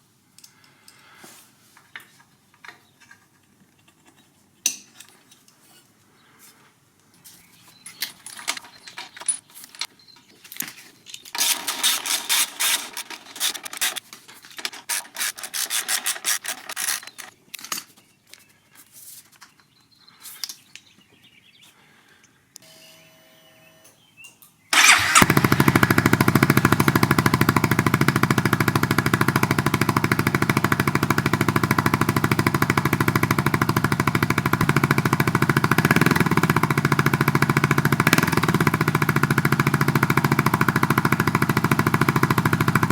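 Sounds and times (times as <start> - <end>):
metal tools clinking and rattling: 7.8 - 18.0
scooter engine starting and idling: 24.7 - 42.9.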